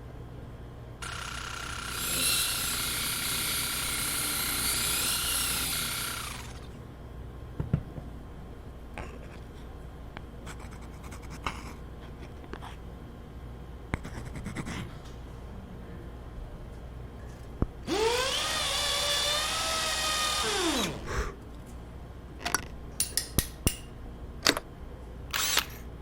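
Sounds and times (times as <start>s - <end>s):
power tool high whine: 1.0s - 6.7s, 17.9s - 21.1s
hand tool clicks and scraping: 22.4s - 24.6s, 25.3s - 25.8s.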